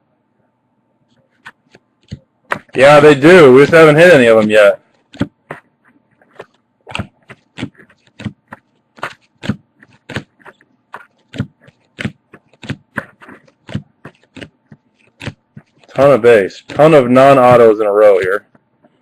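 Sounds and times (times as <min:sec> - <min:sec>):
cards flipped by hand: 0:01.1 - 0:16.0.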